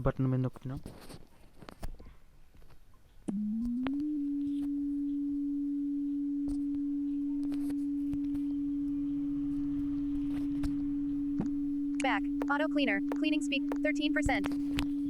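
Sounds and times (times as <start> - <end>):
pure low tone from phone speaker: 3.3 - 15.0.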